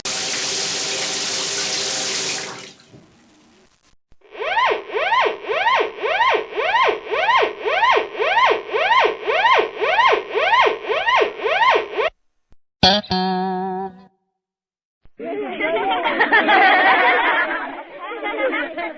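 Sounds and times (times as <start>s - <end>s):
shower water running: 0.0s - 3.5s
siren wailing: 4.3s - 12.1s.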